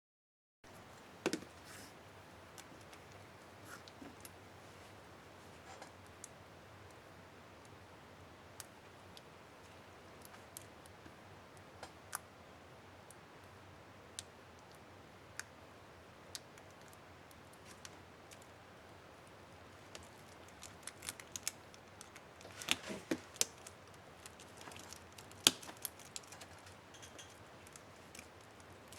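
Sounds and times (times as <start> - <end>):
small plastic clicks: 19.9 - 28.9.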